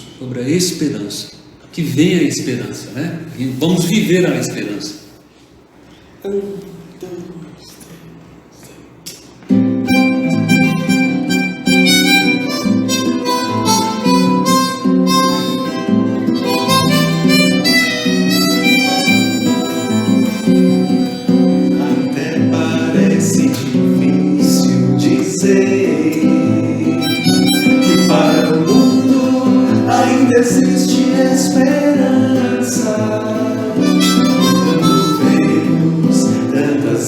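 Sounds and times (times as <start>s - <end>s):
acoustic guitar accompaniment: 5.0s - 37.0s
held-note lead melody: 9.8s - 23.3s, 26.6s - 30.4s, 33.7s - 36.1s.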